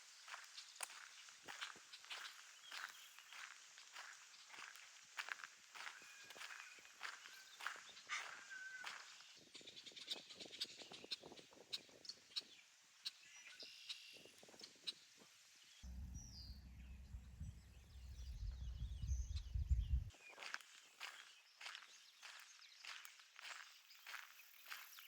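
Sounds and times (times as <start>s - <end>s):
footsteps on trail: 0.0s - 9.8s, 18.2s - 25.0s
birds chirping: 0.2s - 4.8s, 5.8s - 14.8s, 15.8s - 25.0s
low rumble: 15.8s - 20.1s.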